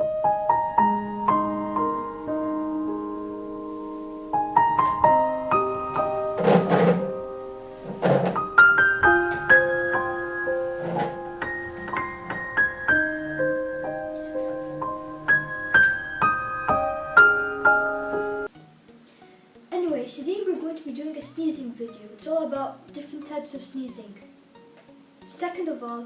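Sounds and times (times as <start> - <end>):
piano music: 0.0 - 18.9.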